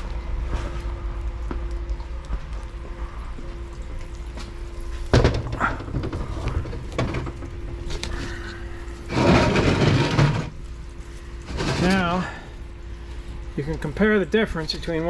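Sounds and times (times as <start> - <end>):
steady hum: 0.0 - 15.0
metal rattling and scraping: 5.1 - 8.4, 9.0 - 10.6, 11.4 - 12.4.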